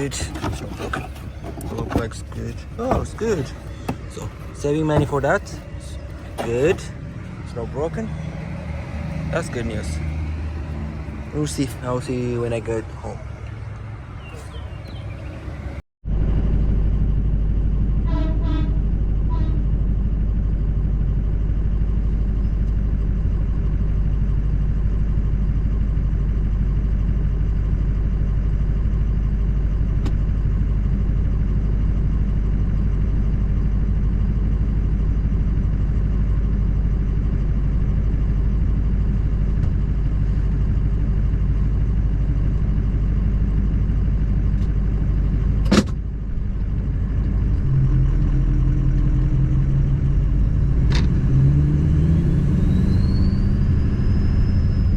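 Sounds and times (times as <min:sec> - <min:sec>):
steady engine hum: 0:00.0 - 0:54.9
truck engine and road noise: 0:00.0 - 0:54.9
sharp thump: 0:45.6 - 0:46.0.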